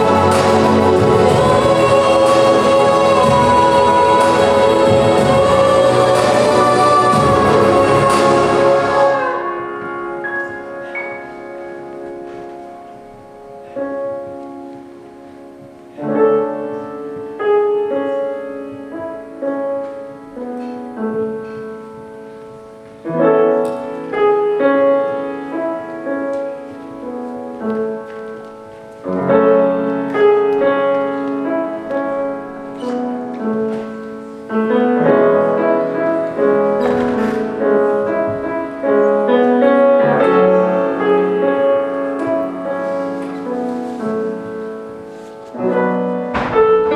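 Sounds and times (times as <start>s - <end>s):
bright crash-like swell: 0.0s - 9.6s
piano in orchestral pop arrangement: 0.0s - 46.9s.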